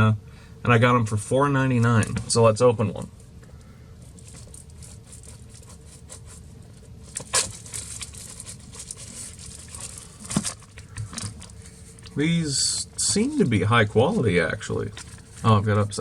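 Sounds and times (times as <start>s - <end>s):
packaging crinkling and rustling: 6.9s - 12.1s
packaging tearing: 7.1s - 10.7s.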